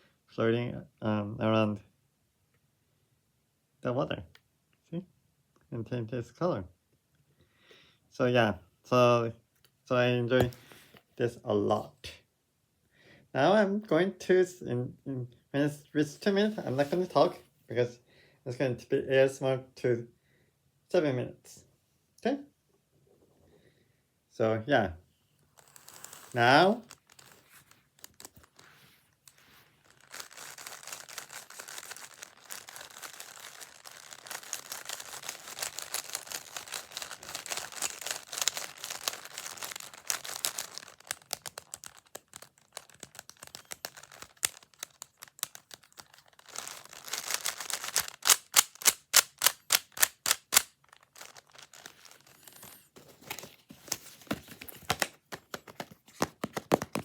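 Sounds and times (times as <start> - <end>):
puzzle cubes clicking and rattling: 25.6 - 28.7, 29.8 - 52.8, 54.3 - 57.0.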